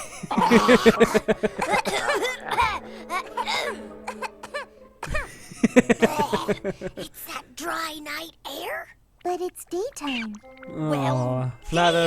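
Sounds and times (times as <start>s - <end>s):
cartoon soundtrack music: 0.0s - 7.3s, 10.4s - 12.0s
person laughing in bursts: 0.0s - 7.4s.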